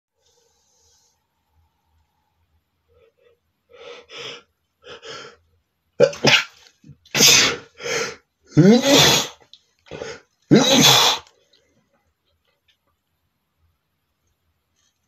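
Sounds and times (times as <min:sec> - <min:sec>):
man sneezing: 0:06.0 - 0:07.8, 0:08.6 - 0:11.3.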